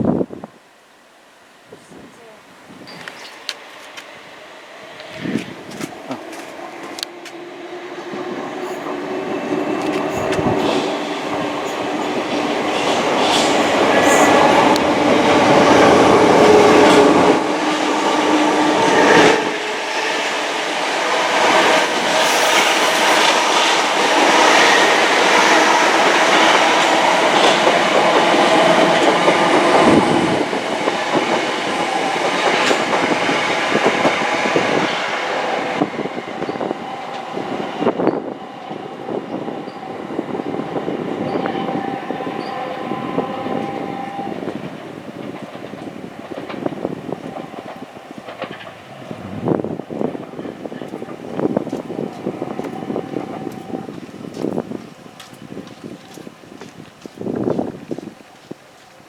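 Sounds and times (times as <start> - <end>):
electric train motor tones: 2.9 - 30.5.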